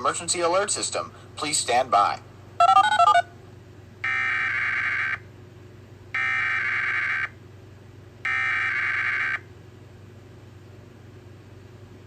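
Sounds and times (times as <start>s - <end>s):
digital data tones: 2.6s - 3.2s.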